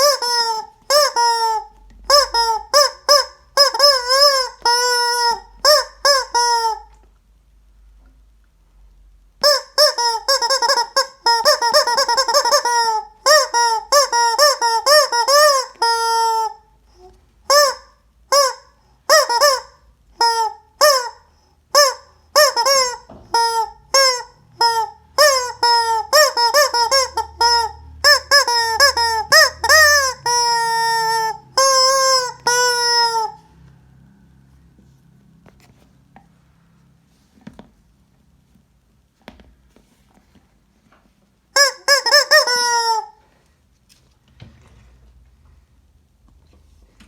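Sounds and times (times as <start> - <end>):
rubber chicken toy squawking: 0.0 - 7.0, 9.4 - 33.6, 41.6 - 43.3.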